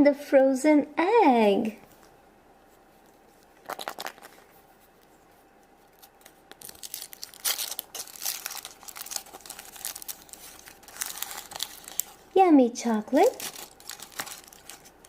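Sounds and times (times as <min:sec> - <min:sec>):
wrapper crinkling and tearing: 0:03.2 - 0:04.6, 0:05.8 - 0:15.0.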